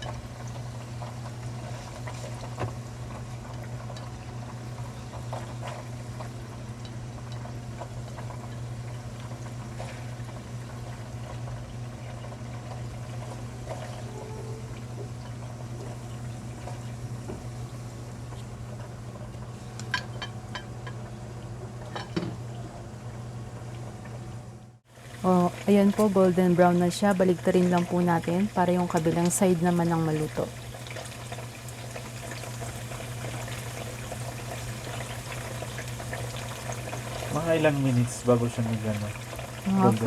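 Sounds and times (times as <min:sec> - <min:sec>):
tofu sizzling in hot oil: 0:30.4 - 0:38.0.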